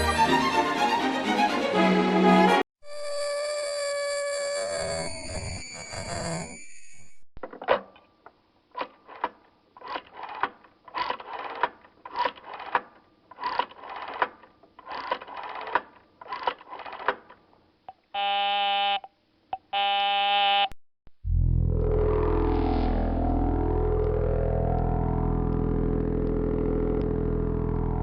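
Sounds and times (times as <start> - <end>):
long electronic phone line beeps: 18.2 - 19.0.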